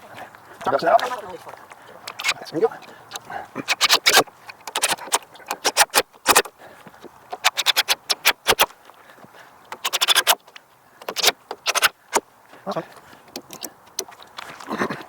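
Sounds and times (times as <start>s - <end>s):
sharp knocks and clicks: 3.1s - 8.7s, 9.7s - 12.3s, 13.2s - 14.4s.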